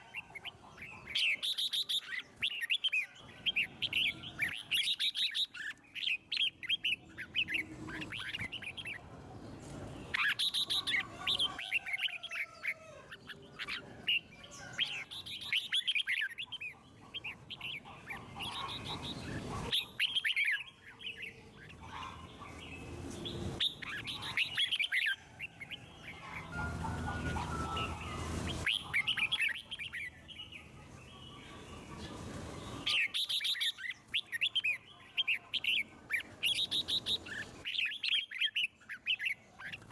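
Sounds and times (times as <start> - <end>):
bird chirping song: 0.0 - 39.9.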